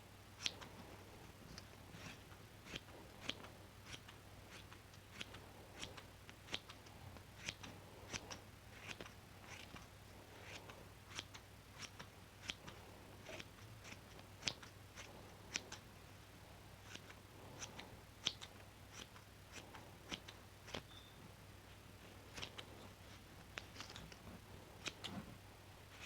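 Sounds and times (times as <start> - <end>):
scissors snipping: 2.0 - 15.8, 16.8 - 20.9.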